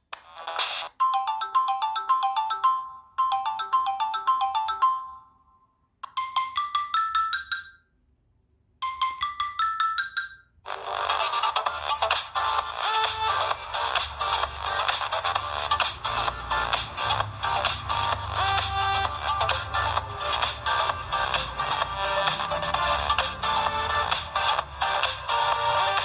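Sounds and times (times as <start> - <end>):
electronic ringtone tune: 1.0 - 5.4, 8.8 - 26.0
phone ringtone melody: 1.0 - 5.5, 6.1 - 7.9, 8.8 - 26.0
short rising ringtone phrases: 13.0 - 26.0.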